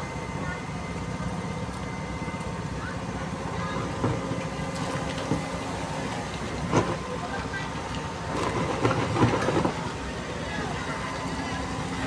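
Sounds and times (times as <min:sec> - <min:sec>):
heavy machinery diesel engine: 0:00.0 - 0:12.0.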